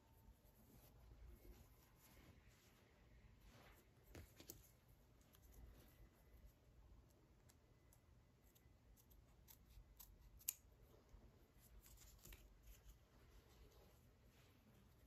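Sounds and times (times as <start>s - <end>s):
small handling clicks and snips: 7.0s - 11.1s.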